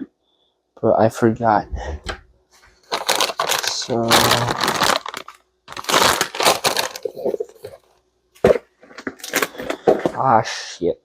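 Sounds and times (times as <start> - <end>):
plastic packaging crinkling: 2.8 - 7.9, 8.5 - 10.2.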